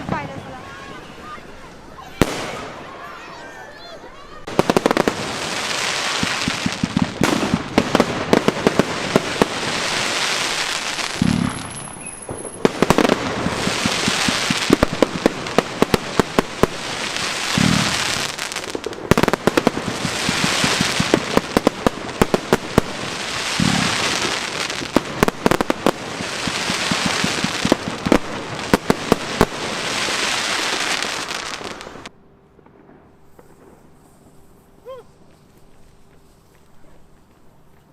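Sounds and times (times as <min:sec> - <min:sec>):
fireworks crackling bangs and pops: 0:00.0 - 0:03.4, 0:04.3 - 0:37.9
fireworks hiss: 0:02.1 - 0:03.1, 0:04.4 - 0:32.1, 0:33.2 - 0:34.9.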